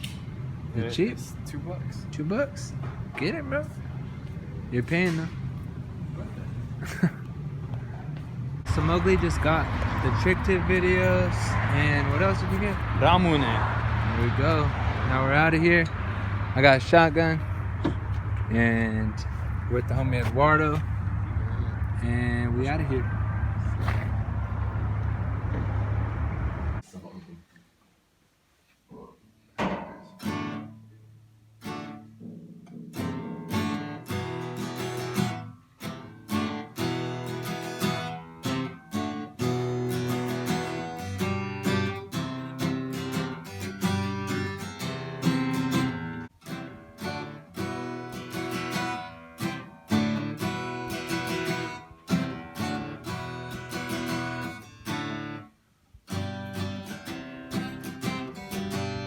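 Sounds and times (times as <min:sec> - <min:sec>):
acoustic guitar strumming: 0:08.6 - 0:21.2, 0:29.8 - 0:59.0.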